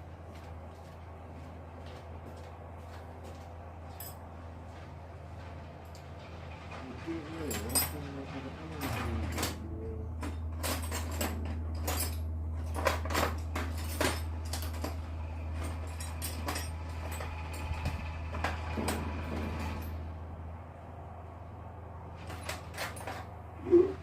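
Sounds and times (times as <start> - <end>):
steady low hum: 0.0 - 24.0
metal hand tools clinking: 7.4 - 8.0.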